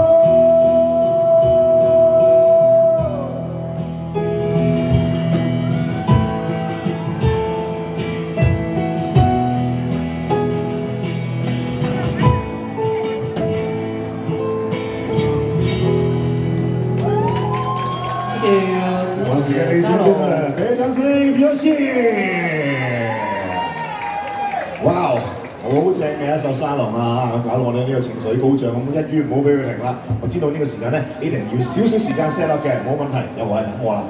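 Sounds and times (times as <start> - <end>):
guitar chords: 0.0 - 17.6
keyboard chords: 0.0 - 17.6.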